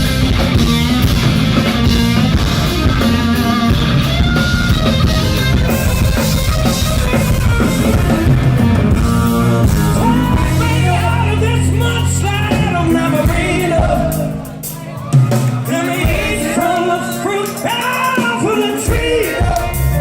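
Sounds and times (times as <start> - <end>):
hard rock band playing live: 0.0 - 20.0
person singing: 9.3 - 20.0.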